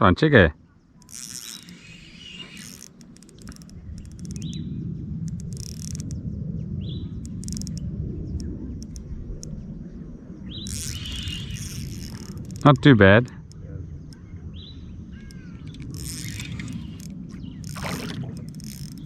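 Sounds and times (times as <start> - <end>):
faint clicks: 1.0 - 4.6, 5.2 - 6.2, 7.2 - 9.7, 10.6 - 14.3, 15.2 - 19.0
steady low rumble: 2.9 - 19.0
bird chirping: 4.0 - 4.8, 10.5 - 12.0.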